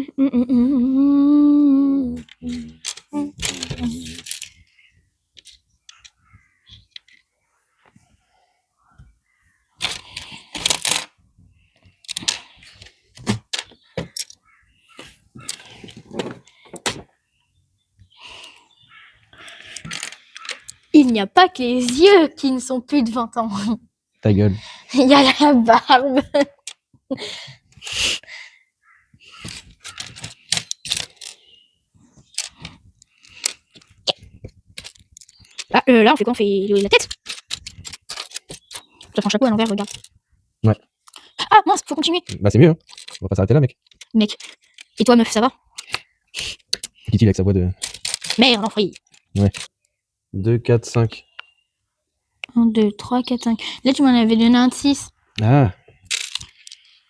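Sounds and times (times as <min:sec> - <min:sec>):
plastic pieces clicking and rattling: 0:02.2 - 0:04.6, 0:09.8 - 0:11.1, 0:12.0 - 0:14.4, 0:15.4 - 0:17.0, 0:19.4 - 0:22.1, 0:29.4 - 0:31.4, 0:32.3 - 0:40.2, 0:41.1 - 0:47.0, 0:47.8 - 0:49.7, 0:56.0 - 0:56.9
plastic pieces clattering and rustling: 0:02.5 - 0:04.6, 0:09.8 - 0:11.1, 0:29.4 - 0:31.4, 0:34.8 - 0:35.8, 0:36.7 - 0:40.1, 0:42.2 - 0:45.1, 0:47.8 - 0:49.7, 0:56.0 - 0:56.9.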